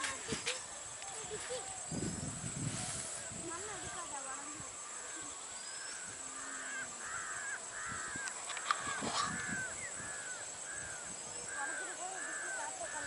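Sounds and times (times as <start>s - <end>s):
crows cawing: 5.8s - 13.0s.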